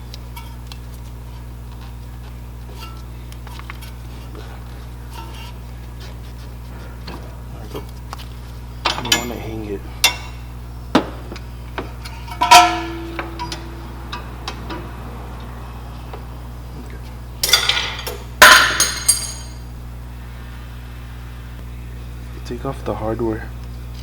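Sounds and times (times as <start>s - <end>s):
steady low hum: 0.0s - 24.0s
metal tools clinking: 8.9s - 10.4s, 12.0s - 13.7s, 17.4s - 19.6s
metal on metal clattering: 12.0s - 13.8s, 17.4s - 19.6s.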